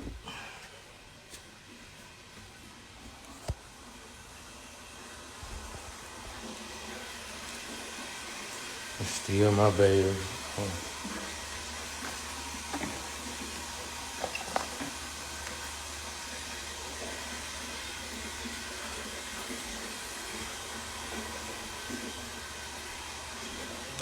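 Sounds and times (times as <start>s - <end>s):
steady hiss: 5.5s - 24.0s.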